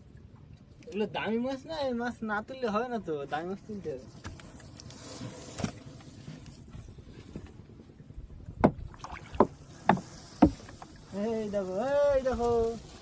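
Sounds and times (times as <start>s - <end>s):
knocks on wooden boat: 8.6s - 10.8s.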